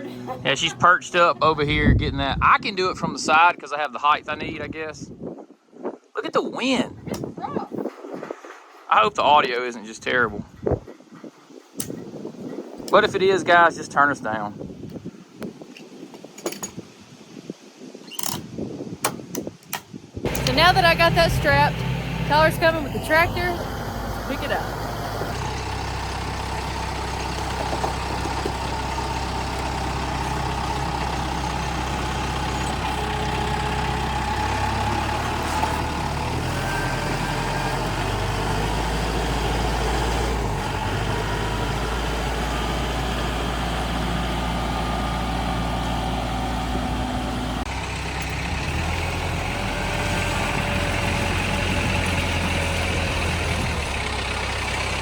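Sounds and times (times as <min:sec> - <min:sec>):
tractor engine running: 0:20.2 - 0:55.0.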